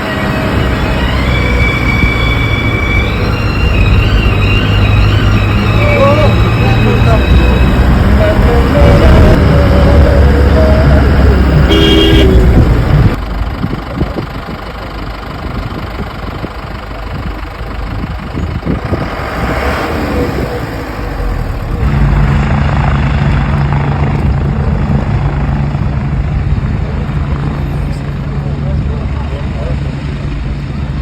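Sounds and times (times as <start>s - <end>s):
low engine hum: 0.0s - 31.0s
motor vehicle noise: 0.0s - 31.0s
short horn toot: 11.4s - 12.8s.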